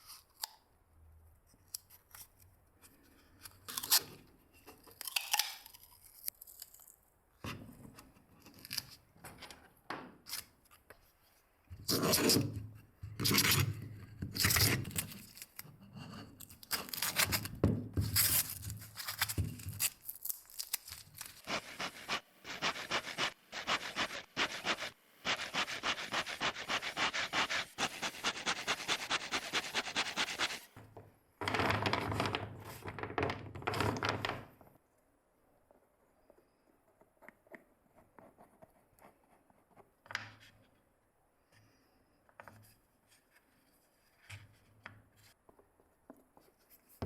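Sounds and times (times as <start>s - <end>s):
hand scraping a workpiece: 21.5s - 30.7s.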